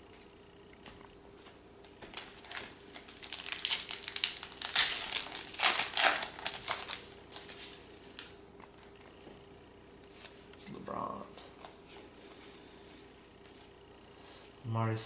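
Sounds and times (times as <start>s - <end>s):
foil wrapper crinkling: 2.1s - 8.3s.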